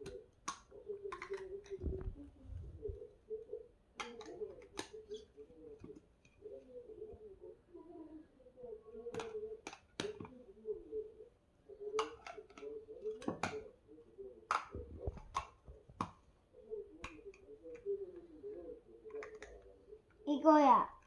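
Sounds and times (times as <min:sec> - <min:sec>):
faint low murmur: 0:00.8 - 0:09.6.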